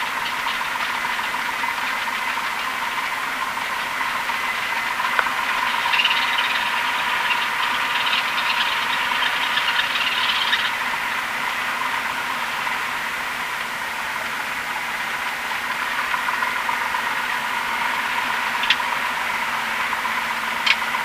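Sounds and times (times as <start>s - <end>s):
aircraft piston engine running: 0.0s - 21.0s.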